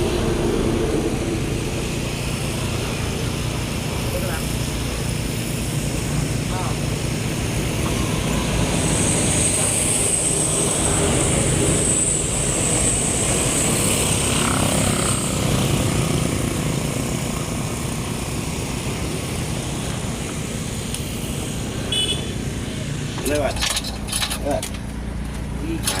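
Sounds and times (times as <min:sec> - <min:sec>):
machinery droning: 0:00.0 - 0:26.0
high hiss: 0:15.1 - 0:23.2.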